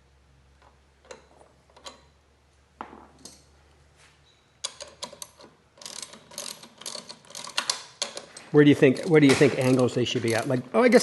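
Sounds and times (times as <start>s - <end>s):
ratchet wrench clicking: 4.6s - 10.5s
metallic clicks: 4.6s - 10.6s.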